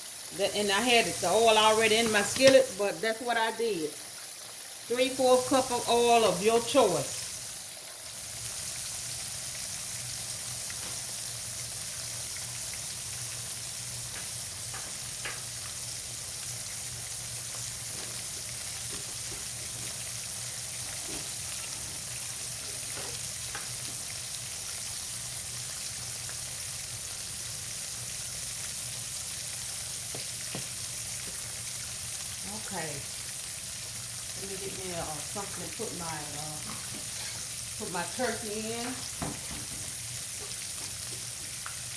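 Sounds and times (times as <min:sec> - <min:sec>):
meat sizzling in oil: 0:00.0 - 0:41.9.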